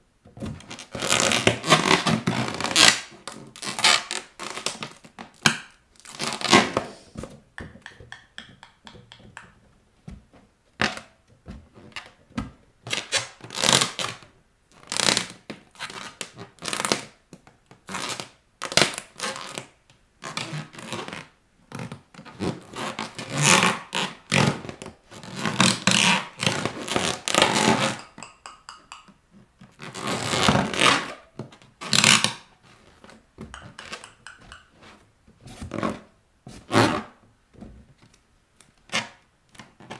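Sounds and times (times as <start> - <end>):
squeaky rubber balloons rubbed: 22.2 - 28.0, 29.8 - 31.1.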